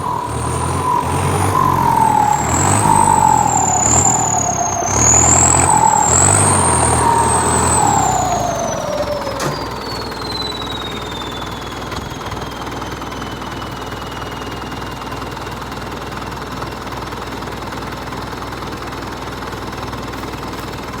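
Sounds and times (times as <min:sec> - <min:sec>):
high whine falling in pitch: 0:00.0 - 0:17.0
vehicle engine humming: 0:00.0 - 0:21.0.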